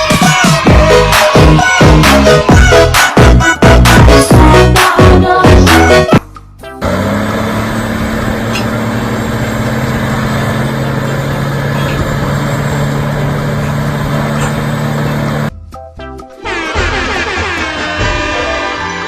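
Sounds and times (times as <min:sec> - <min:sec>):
heavy machine engine running: 0:06.8 - 0:15.5.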